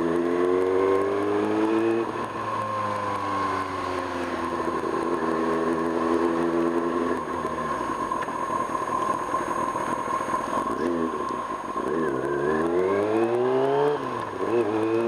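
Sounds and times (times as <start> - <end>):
motorcycle engine revving: 0.0 - 8.1, 10.4 - 15.0.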